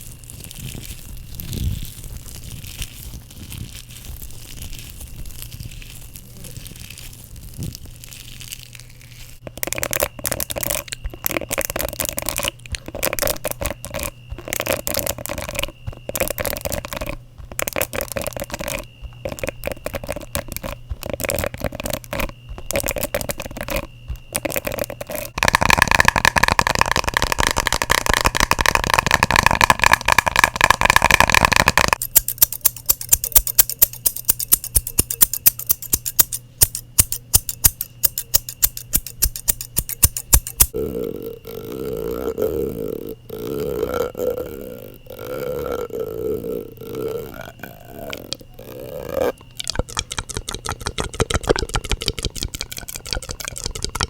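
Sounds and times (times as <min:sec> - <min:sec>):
fingers scratching objects: 0:00.0 - 0:40.8, 0:41.6 - 0:54.0
fingers tapping on objects: 0:09.5 - 0:40.8, 0:49.6 - 0:54.0.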